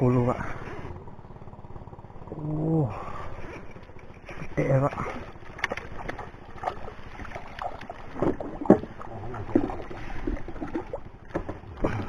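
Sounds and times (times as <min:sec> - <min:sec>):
knocks and thumps in boat: 0:03.6 - 0:12.0
water splashing: 0:03.9 - 0:12.0.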